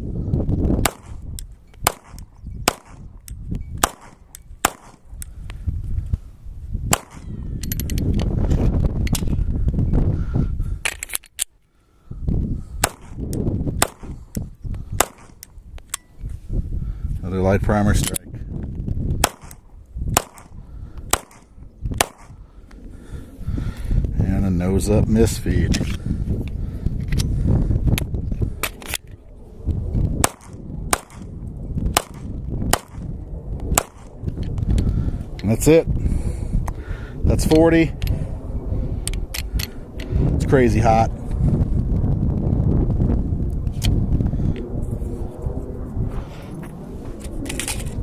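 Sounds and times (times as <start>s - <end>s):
wind buffeting microphone: 0.0s - 48.0s
pistol shots: 0.8s - 1.2s, 1.8s - 3.0s, 3.8s - 5.0s, 6.9s - 7.3s, 12.8s - 13.2s, 13.8s - 14.1s, 15.0s - 15.4s, 19.2s - 20.5s, 21.1s - 22.3s, 30.2s - 31.3s, 31.9s - 33.0s, 33.7s - 34.1s.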